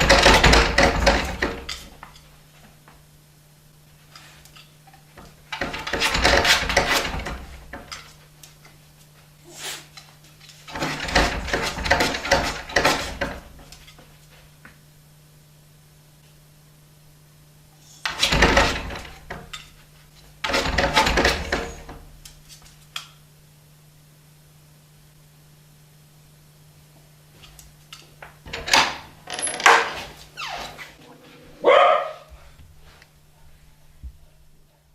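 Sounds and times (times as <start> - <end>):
dog claws scratching at door: 5.5 - 8.2, 10.5 - 14.0, 20.4 - 22.7
dog barking: 31.6 - 32.3.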